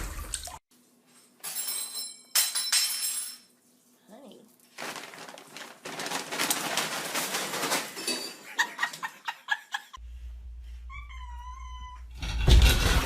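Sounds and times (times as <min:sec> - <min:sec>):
scuffling and clattering: 0:04.8 - 0:08.6
cat meowing: 0:10.9 - 0:12.2.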